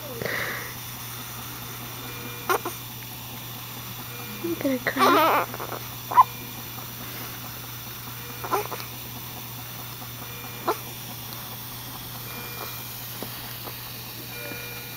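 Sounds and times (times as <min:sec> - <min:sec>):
baby hiccuping: 0:02.4 - 0:02.8, 0:04.9 - 0:06.4, 0:08.4 - 0:08.9, 0:10.6 - 0:10.9.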